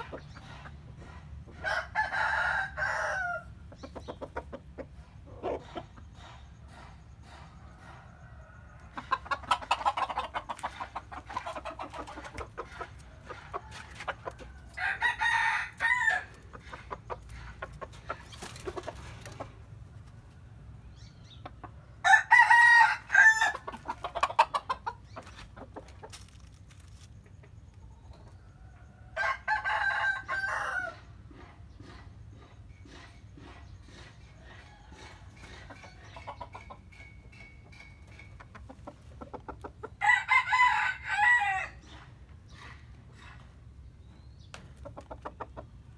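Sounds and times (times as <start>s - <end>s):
chickens clucking: 0.0s - 45.9s
rooster crowing: 1.6s - 3.5s, 13.4s - 16.4s, 22.0s - 23.7s, 29.0s - 31.1s, 40.0s - 41.8s.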